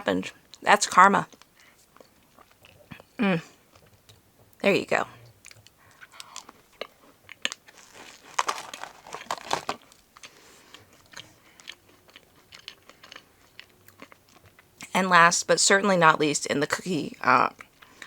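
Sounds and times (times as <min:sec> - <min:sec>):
person crunching a cookie: 0:05.4 - 0:14.7.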